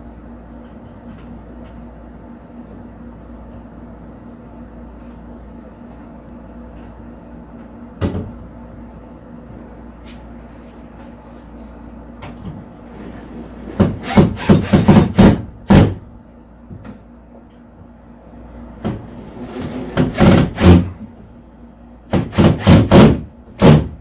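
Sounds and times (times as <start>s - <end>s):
thin high whine: 12.8s - 14.1s, 19.0s - 20.2s
power drill driving screws: 12.9s - 15.0s.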